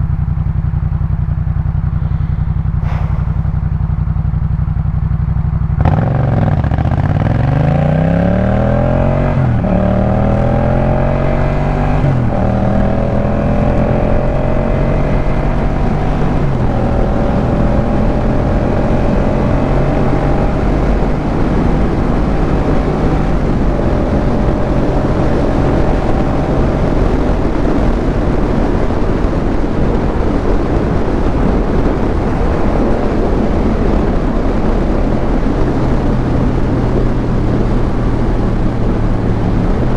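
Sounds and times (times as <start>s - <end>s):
motorcycle engine accelerating: 0.0s - 39.9s
rushing noise: 1.8s - 4.8s.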